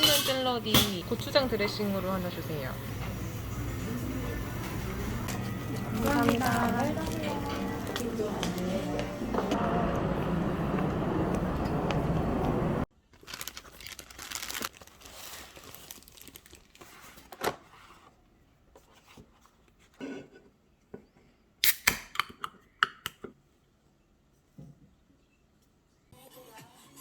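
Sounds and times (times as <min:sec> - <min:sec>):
busy shop background noise: 0:00.0 - 0:13.5
packaging rustling and tearing: 0:05.9 - 0:08.6, 0:13.1 - 0:17.9.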